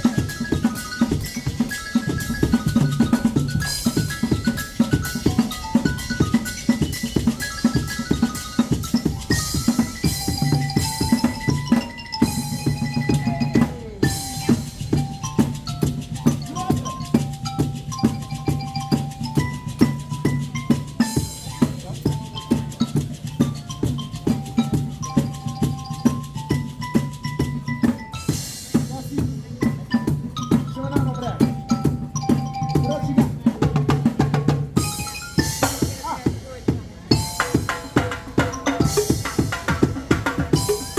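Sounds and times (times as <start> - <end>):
ringing metallic tones: 0.0 - 33.9, 34.8 - 40.9
drum strikes: 0.0 - 40.9.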